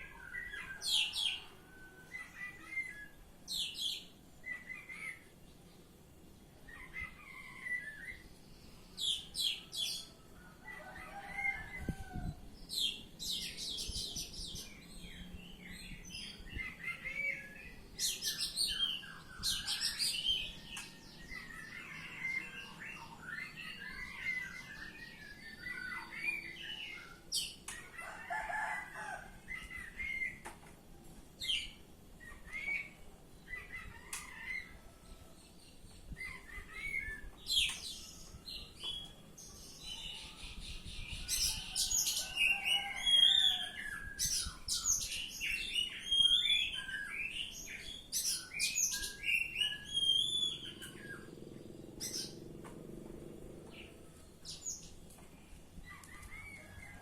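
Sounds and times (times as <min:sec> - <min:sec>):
bird singing whistles and trills: 0:40.0 - 0:51.3.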